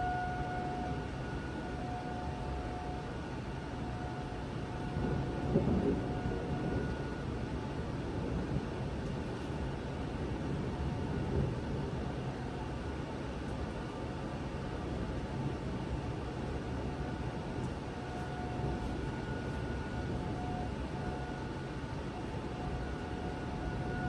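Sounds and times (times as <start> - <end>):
faint tornado siren: 0.0 - 24.0
thunderstorm rushing noise: 4.9 - 7.0.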